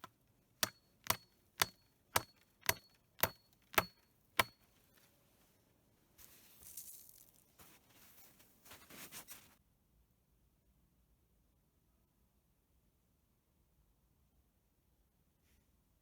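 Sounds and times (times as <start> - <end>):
hammer blows on wooden stake: 0.0 - 4.6
faint rustling: 4.8 - 9.6.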